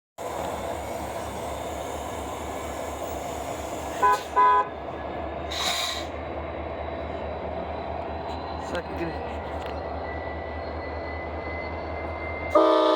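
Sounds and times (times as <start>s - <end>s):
locomotive horn blasts: 4.0s - 4.8s, 12.5s - 12.9s.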